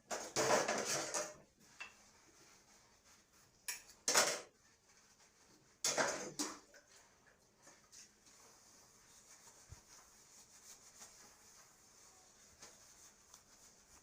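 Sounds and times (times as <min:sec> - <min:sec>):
dishes and cutlery clattering: 0:00.1 - 0:02.0, 0:03.6 - 0:04.5, 0:05.8 - 0:06.7.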